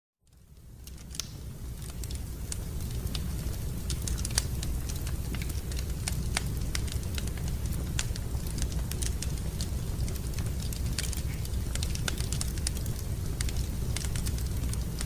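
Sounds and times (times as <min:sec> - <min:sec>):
low rumble of fire: 0:00.2 - 0:15.0
wood fire crackling and popping: 0:00.2 - 0:15.0.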